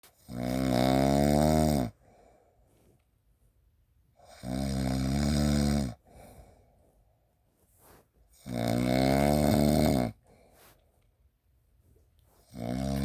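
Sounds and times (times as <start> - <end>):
deep snores: 0.1 - 2.1, 4.2 - 6.5, 8.4 - 10.2, 12.4 - 13.0
faint breathing: 1.9 - 3.2, 6.0 - 8.3, 10.2 - 11.2.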